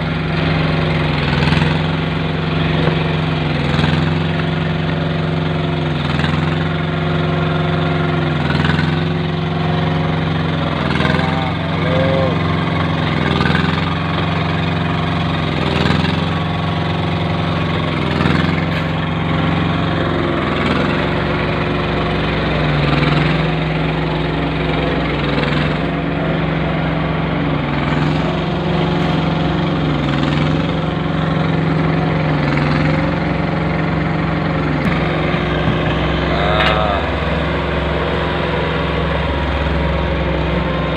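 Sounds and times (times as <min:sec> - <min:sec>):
small machine engine running: 0:00.0 - 0:40.9.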